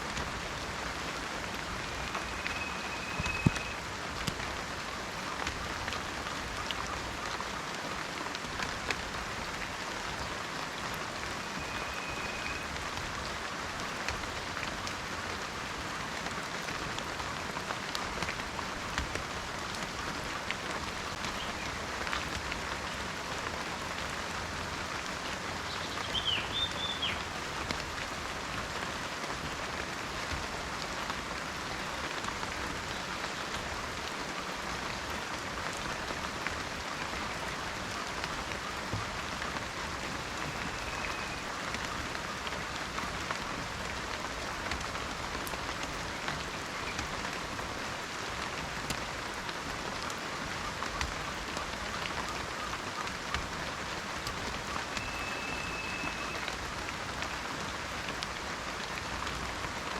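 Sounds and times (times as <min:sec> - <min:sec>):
rain on foliage: 0:00.0 - 0:59.9
bird chirping: 0:02.0 - 0:03.8.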